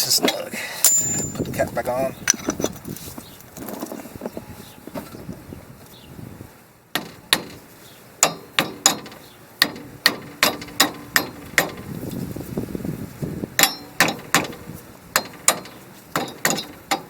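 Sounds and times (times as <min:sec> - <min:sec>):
hammer tapping metal: 0:00.8 - 0:01.5, 0:08.2 - 0:11.8, 0:13.6 - 0:14.6.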